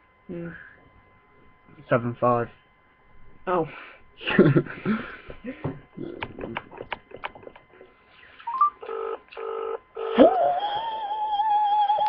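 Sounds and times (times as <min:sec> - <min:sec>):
telephone ringback tone: 0:08.5 - 0:12.0
wavering pitched note: 0:10.0 - 0:12.0.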